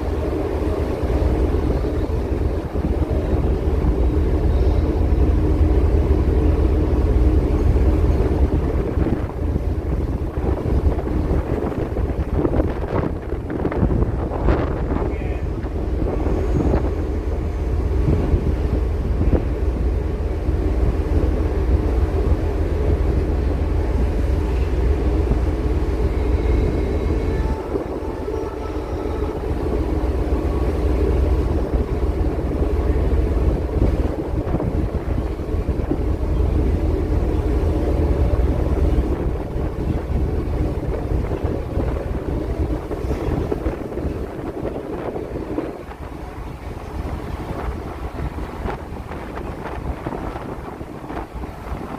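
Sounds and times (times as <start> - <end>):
ship engines rumbling: 0.0 - 51.9
wind buffeting microphone: 0.0 - 51.9.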